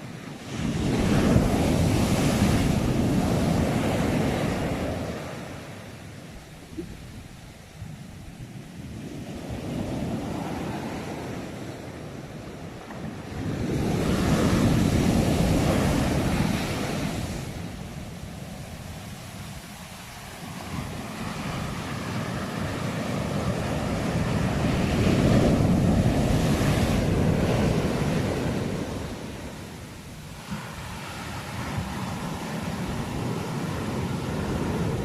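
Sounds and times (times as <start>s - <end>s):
sea waves breaking on shore: 0.0s - 35.0s.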